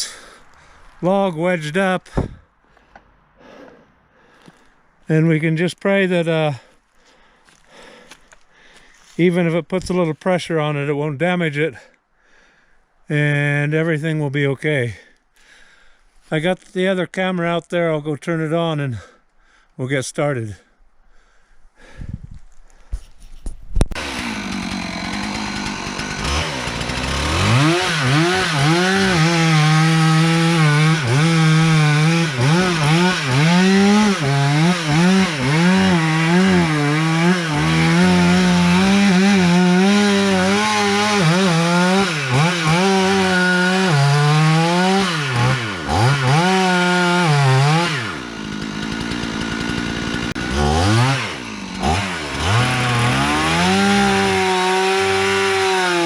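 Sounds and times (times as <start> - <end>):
chainsaw cutting wood: 23.9 - 56.0.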